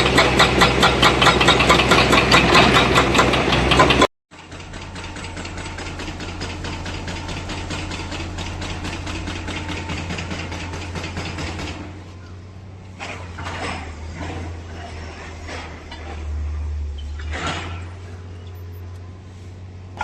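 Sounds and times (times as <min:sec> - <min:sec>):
diesel engine clattering: 0:00.0 - 0:20.0
short rough noises: 0:12.9 - 0:18.4.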